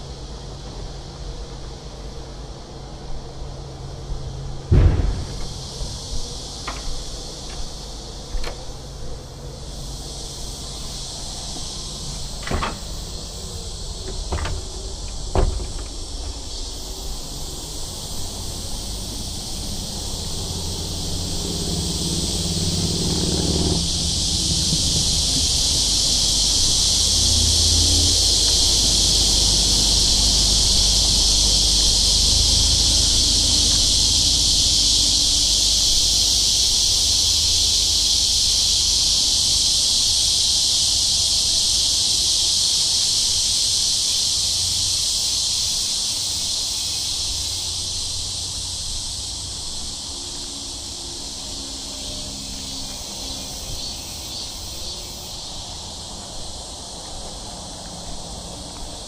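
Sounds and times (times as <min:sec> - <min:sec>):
cicada chorus drone: 0:00.0 - 0:59.0
low rumble: 0:04.7 - 0:08.0.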